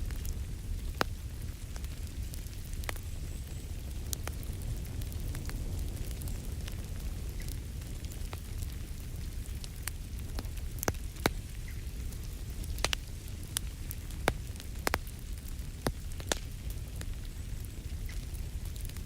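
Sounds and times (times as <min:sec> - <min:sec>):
wood fire crackling: 0:00.0 - 0:19.0.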